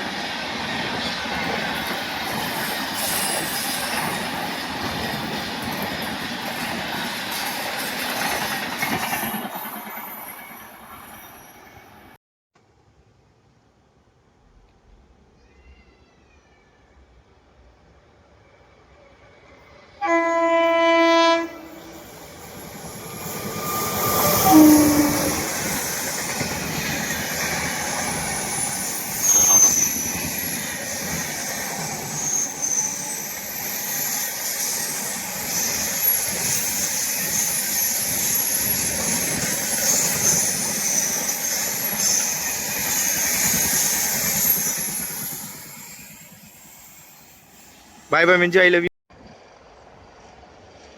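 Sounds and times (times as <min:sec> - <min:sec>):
train passing rumble: 0:17.2 - 0:50.9
train horn: 0:20.0 - 0:22.0, 0:23.7 - 0:25.5
wheel squeals: 0:21.8 - 0:47.8.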